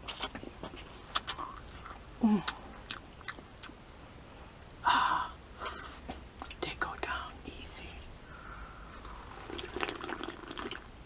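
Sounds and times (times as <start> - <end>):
chewing and smacking mouth sounds: 0.0 - 3.8.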